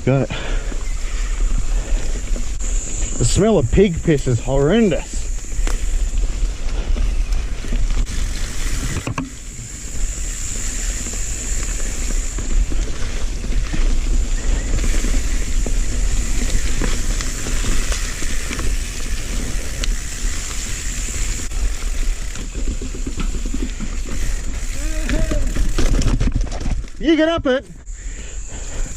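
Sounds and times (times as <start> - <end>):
bike rattling over roots: 0.0 - 28.9
bike tyres rumbling: 0.0 - 28.9
steady high hiss: 0.1 - 13.2, 14.3 - 22.6
wind buffeting microphone: 3.8 - 26.9.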